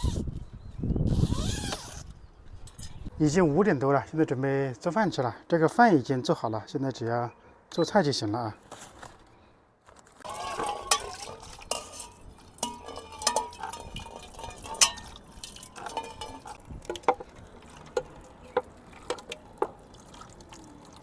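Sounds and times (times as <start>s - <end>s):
utensils and dishes clattering: 10.2s - 19.8s.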